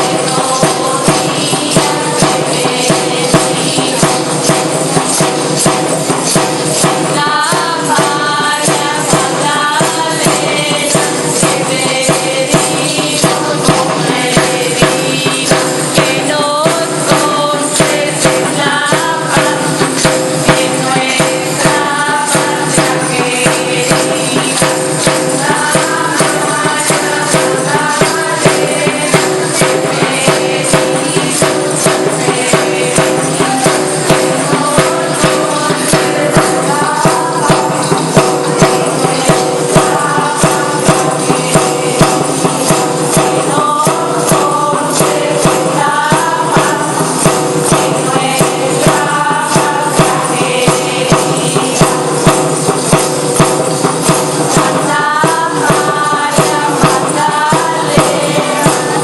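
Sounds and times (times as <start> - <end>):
tambourines beating a rhythm: 0.0 - 59.0.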